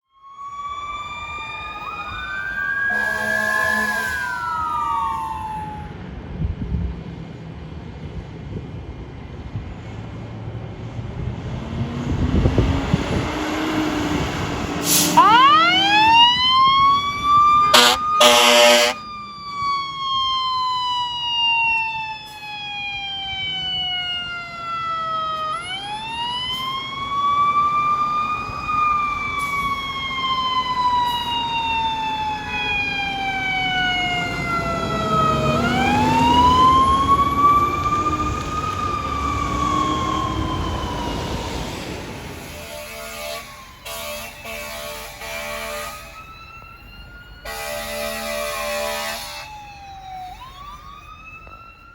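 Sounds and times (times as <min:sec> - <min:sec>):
fire truck siren wailing: 0:00.0 - 0:06.1, 0:11.8 - 0:51.9
truck engine: 0:00.6 - 0:06.4, 0:07.1 - 0:20.2, 0:22.2 - 0:51.9
air horn blasts: 0:02.8 - 0:05.9, 0:14.8 - 0:16.2, 0:17.7 - 0:19.0, 0:42.5 - 0:46.2, 0:47.4 - 0:49.5.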